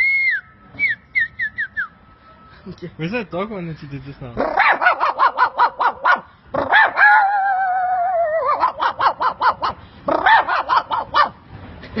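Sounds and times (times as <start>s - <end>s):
dog howling: 4.4s - 11.3s
small dog yipping: 4.4s - 11.4s.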